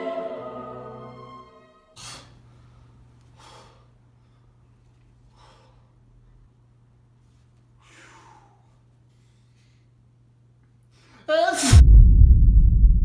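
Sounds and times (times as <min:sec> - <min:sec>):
choir music: 0:00.0 - 0:02.0
person breathing: 0:02.0 - 0:04.6, 0:05.3 - 0:06.0, 0:07.8 - 0:10.0.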